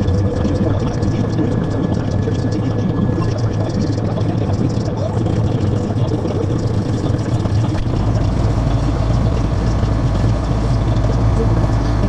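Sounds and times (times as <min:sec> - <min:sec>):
deep low rumble: 0:00.0 - 0:12.0
tractor engine running: 0:00.0 - 0:12.0.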